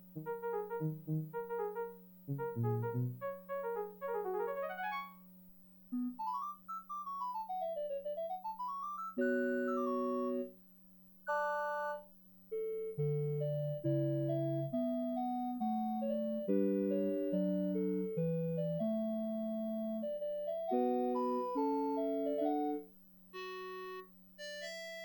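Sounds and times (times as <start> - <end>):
keyboard playing piano voice: 0.0 - 5.2, 6.0 - 10.5, 12.9 - 22.8.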